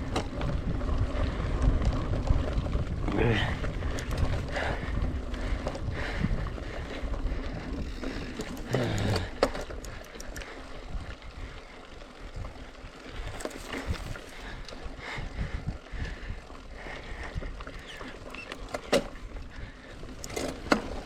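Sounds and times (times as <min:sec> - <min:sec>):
mountain bike tyre and frame rumble: 0:00.0 - 0:21.0
rattling clicks: 0:03.8 - 0:04.4, 0:08.2 - 0:10.5.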